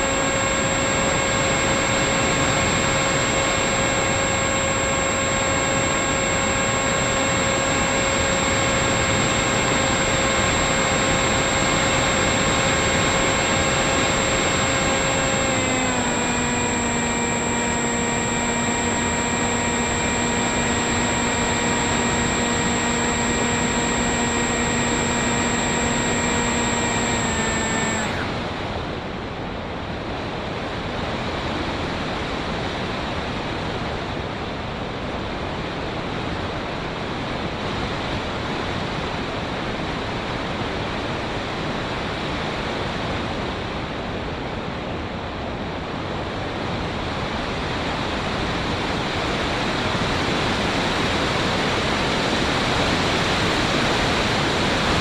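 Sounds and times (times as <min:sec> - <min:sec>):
electric motor whine: 0:00.0 - 0:28.7, 0:47.3 - 0:55.0.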